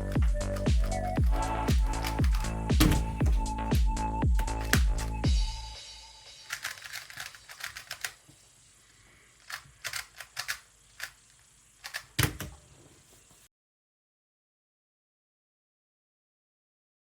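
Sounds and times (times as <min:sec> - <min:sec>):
puzzle cube plastic clicks: 0:06.5 - 0:08.2, 0:09.4 - 0:12.4.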